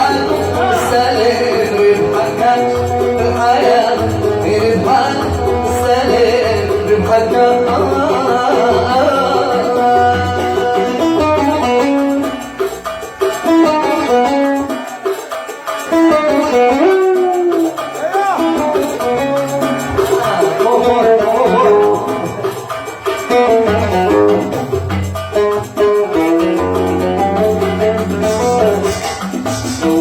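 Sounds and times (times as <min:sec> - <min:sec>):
oud melody: 0:00.0 - 0:30.0.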